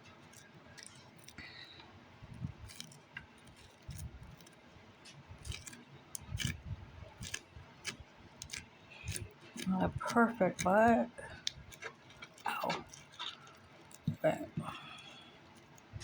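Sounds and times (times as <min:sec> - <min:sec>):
toy packaging clicks and crinkles: 0:00.0 - 0:14.2, 0:14.8 - 0:16.0.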